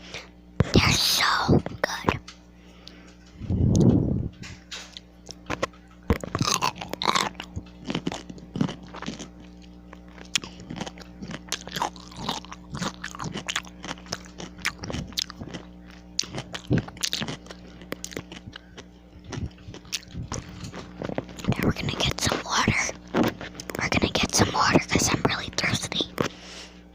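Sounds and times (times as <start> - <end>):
person crunching a pickle: 4.9 - 26.3.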